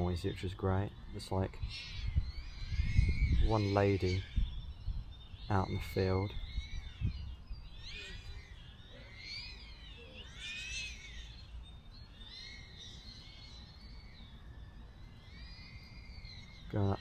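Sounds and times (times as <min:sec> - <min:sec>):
distant quadcopter propellers whining: 0:06.3 - 0:16.8.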